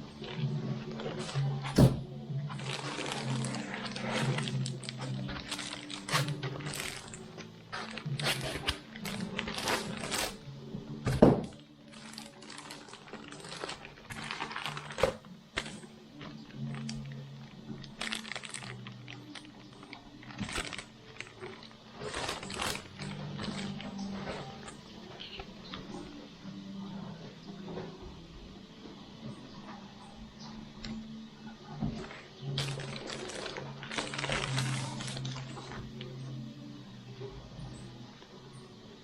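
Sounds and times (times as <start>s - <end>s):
hands handling packaging: 2.4s - 26.2s, 31.9s - 36.2s.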